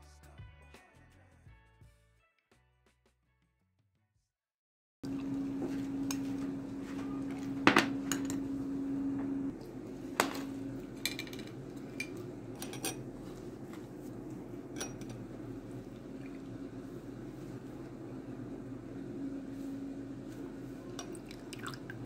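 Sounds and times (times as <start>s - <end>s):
steady hum: 5.0s - 22.0s
dishes and utensils clinking: 7.4s - 8.5s, 10.2s - 13.1s, 14.7s - 15.2s.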